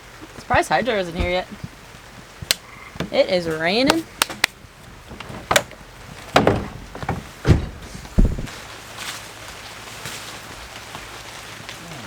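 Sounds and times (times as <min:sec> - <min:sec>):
knocks and thuds: 0:06.3 - 0:08.6.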